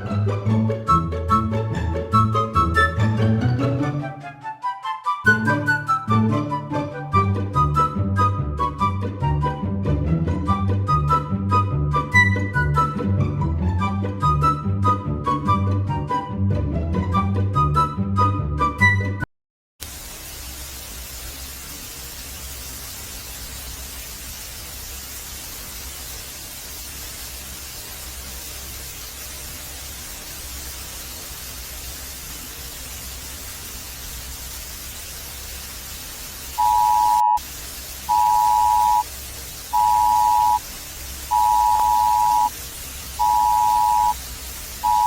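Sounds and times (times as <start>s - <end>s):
steady hiss: 19.8s - 45.0s
two-tone electronic beep: 36.6s - 37.4s, 38.1s - 39.1s, 39.8s - 40.6s, 41.3s - 42.5s, 43.2s - 44.2s.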